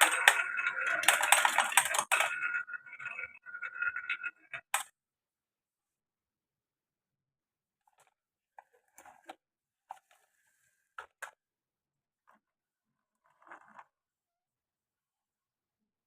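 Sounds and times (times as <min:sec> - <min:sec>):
glass marbles rattling on wood: 0:00.0 - 0:04.9.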